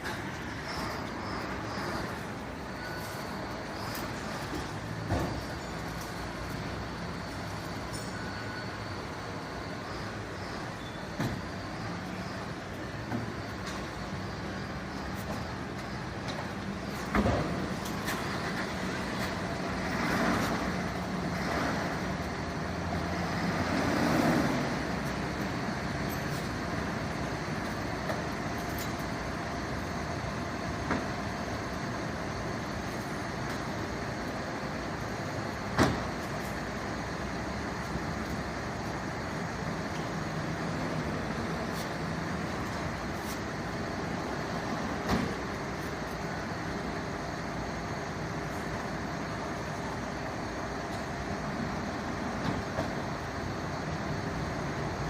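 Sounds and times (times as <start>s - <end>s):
road traffic noise: 0.0s - 55.0s
vehicles passing: 11.8s - 30.2s.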